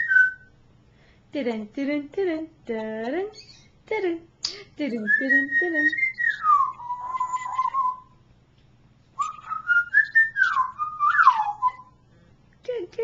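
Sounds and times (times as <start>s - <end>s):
parrot whistling: 0.0s - 0.5s, 5.0s - 8.2s, 9.2s - 12.0s.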